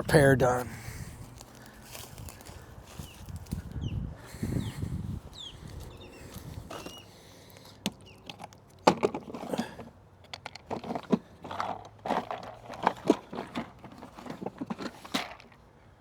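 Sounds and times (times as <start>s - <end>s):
hands handling plastic tubing: 6.3s - 15.6s.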